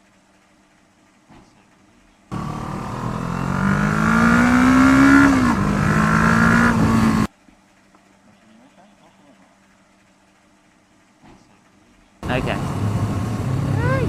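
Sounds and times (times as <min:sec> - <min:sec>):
motorcycle engine accelerating: 0:02.3 - 0:07.3, 0:12.2 - 0:14.0.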